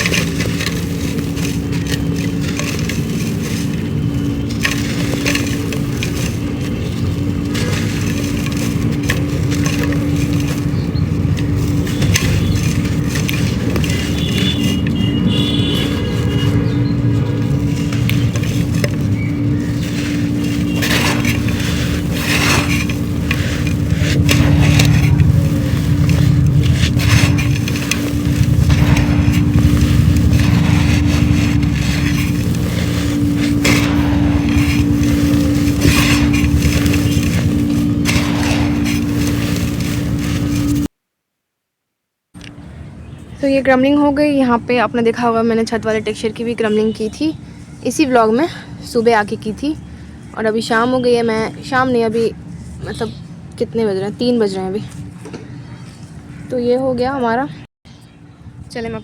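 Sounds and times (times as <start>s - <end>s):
hands crushing brittle material: 0.0s - 40.9s
steady low hum: 0.0s - 40.9s.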